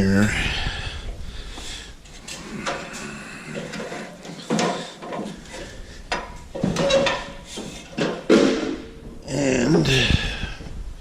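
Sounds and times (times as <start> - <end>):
knocks and clunks: 2.6 - 9.2.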